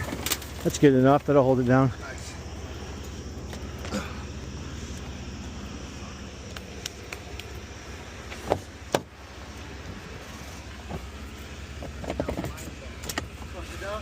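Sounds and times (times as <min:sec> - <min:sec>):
truck engine idling: 0:00.0 - 0:14.0.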